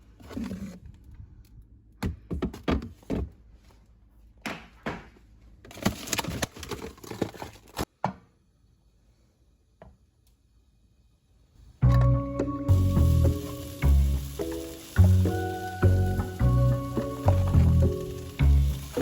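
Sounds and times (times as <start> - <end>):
rustling and scraping: 0.0 - 1.2, 5.6 - 7.9.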